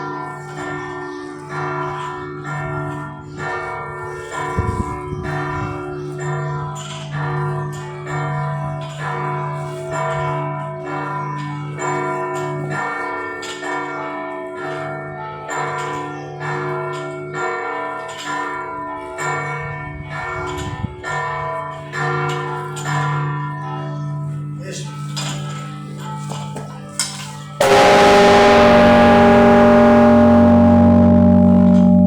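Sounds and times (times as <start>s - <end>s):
church bells ringing: 0.0s - 32.0s
low sustained hum: 27.6s - 32.0s.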